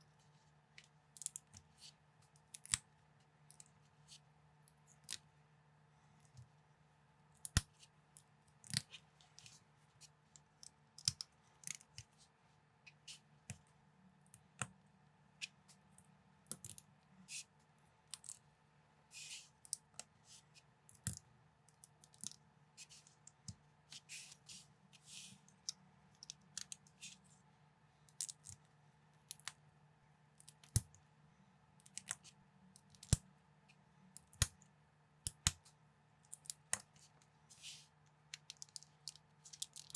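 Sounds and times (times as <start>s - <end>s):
faint steady hum: 0.0s - 39.9s.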